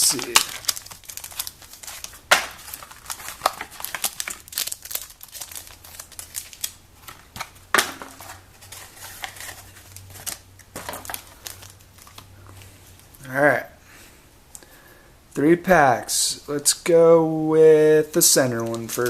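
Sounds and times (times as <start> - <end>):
plastic and foil packaging crinkling: 0.0 - 12.7, 18.2 - 19.0.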